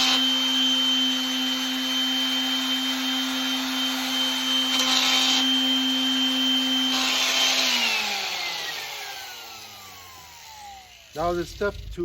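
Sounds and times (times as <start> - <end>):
electric sander running: 0.0 - 12.0
gritty hiss of sanding metal: 11.1 - 12.0.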